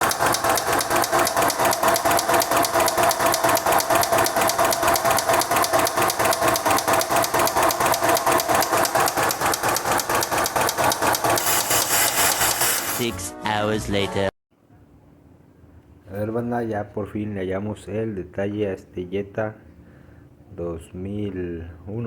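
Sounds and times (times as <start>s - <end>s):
car engine running: 0.0s - 11.8s
rapid engine knocking: 0.0s - 11.9s.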